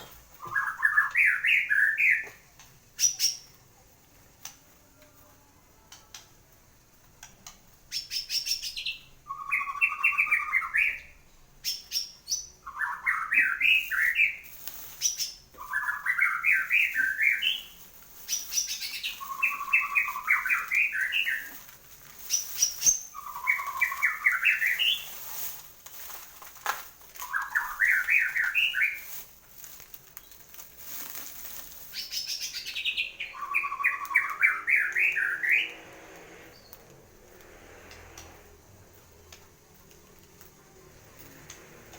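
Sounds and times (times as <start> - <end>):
songbird singing: 0.0 - 25.2, 27.1 - 29.2, 31.7 - 41.9
high whistles and clicks: 32.0 - 35.8.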